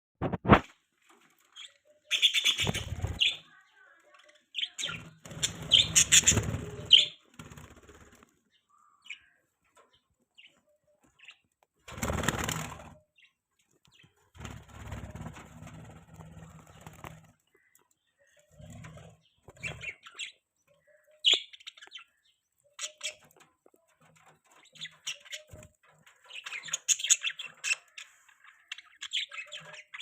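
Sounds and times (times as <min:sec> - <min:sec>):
wings fluttering: 0:00.2 - 0:03.6, 0:04.6 - 0:08.5, 0:11.2 - 0:20.3, 0:22.8 - 0:28.0
budgies chirping: 0:01.4 - 0:07.7, 0:16.4 - 0:30.0.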